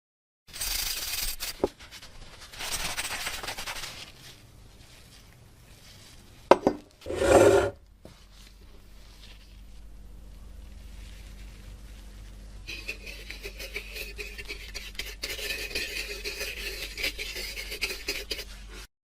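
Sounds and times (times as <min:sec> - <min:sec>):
metal and glass scraping: 0:07.1 - 0:07.8.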